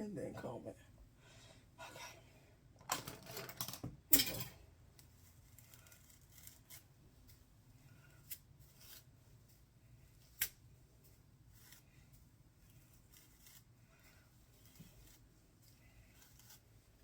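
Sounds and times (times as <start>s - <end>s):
low room hum: 0.0s - 17.0s
hair rustling while combed: 5.0s - 17.0s.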